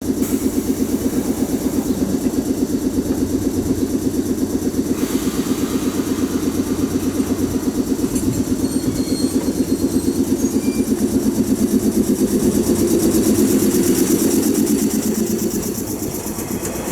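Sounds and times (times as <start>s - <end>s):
electric train rapidly pulsing drone: 0.0s - 16.9s
high hiss: 4.9s - 9.6s.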